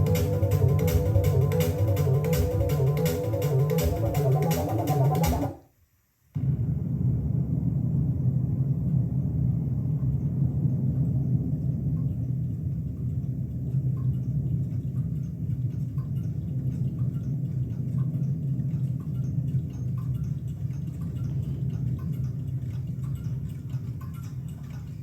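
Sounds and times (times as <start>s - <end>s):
cassette deck humming: 0.0s - 5.6s
faint ticks: 10.0s - 25.0s.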